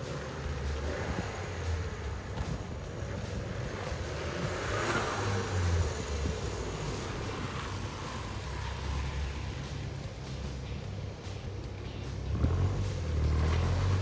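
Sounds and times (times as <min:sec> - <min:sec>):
motor vehicle on road: 0:00.0 - 0:14.0.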